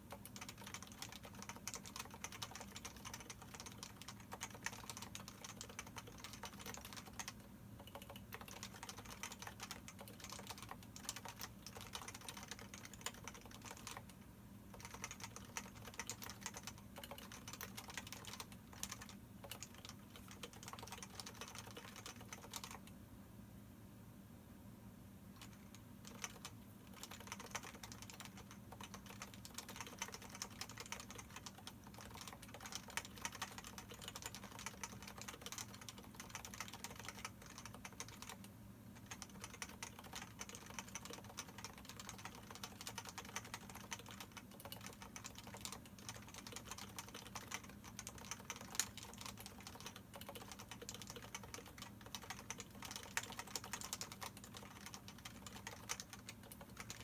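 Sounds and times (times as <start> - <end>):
soft keyboard keystroke clacks: 0.1 - 23.0, 25.4 - 57.0.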